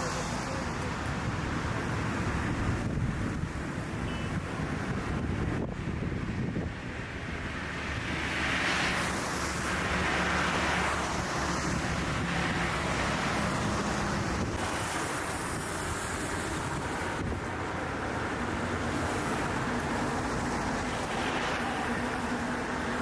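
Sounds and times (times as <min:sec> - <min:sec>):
engines humming: 0:00.0 - 0:23.0
tyre hiss of passing vehicles: 0:00.0 - 0:23.0.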